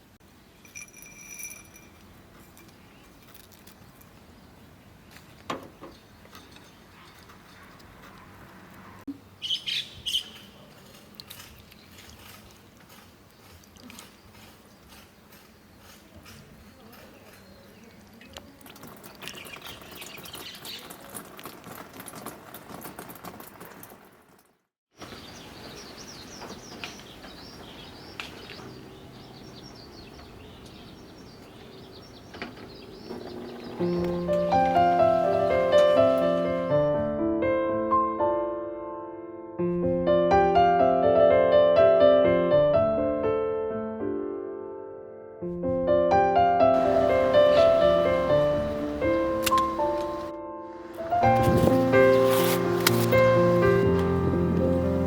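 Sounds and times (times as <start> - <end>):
bird chirping: 9.4 - 12.1, 16.6 - 21.2, 25.0 - 36.1.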